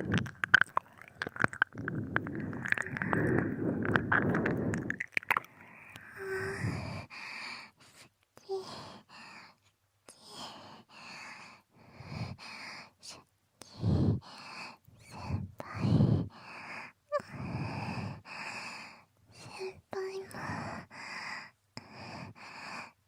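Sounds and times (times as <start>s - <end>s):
breaths and soft sighs: 0.0s - 23.0s.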